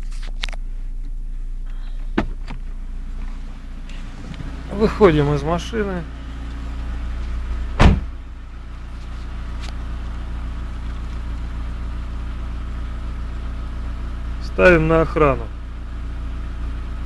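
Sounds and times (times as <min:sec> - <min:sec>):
car engine idling: 0:00.4 - 0:17.0
car door slamming: 0:02.0 - 0:05.7, 0:06.4 - 0:08.2.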